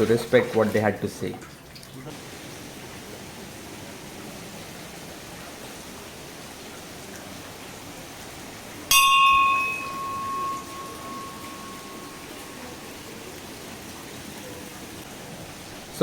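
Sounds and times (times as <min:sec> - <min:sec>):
steady background hiss: 0:02.1 - 0:16.0
temple bell ringing: 0:08.9 - 0:14.8.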